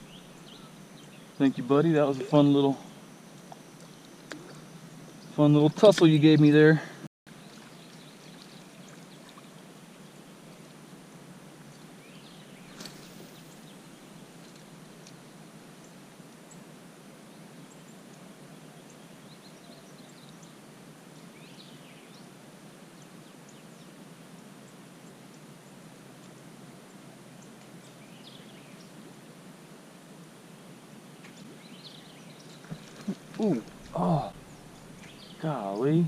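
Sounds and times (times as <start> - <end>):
low steady hiss: 0.0 - 36.0.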